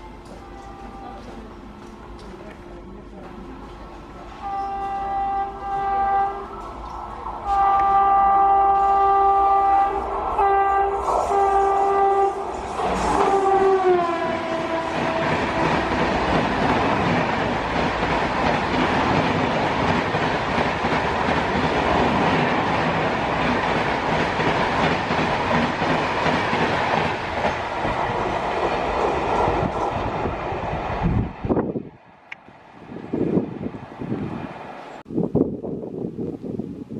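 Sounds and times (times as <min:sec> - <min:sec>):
train horn blasts: 0:00.0 - 0:01.6, 0:04.3 - 0:16.3
train coaches rushing past: 0:00.0 - 0:35.1.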